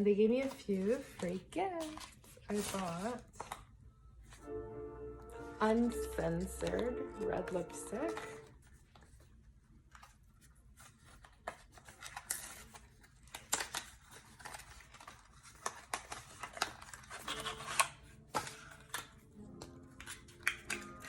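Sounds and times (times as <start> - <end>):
cardboard and plastic rustling: 0.1 - 4.4, 5.8 - 21.0
packaging clicks: 11.5 - 21.0.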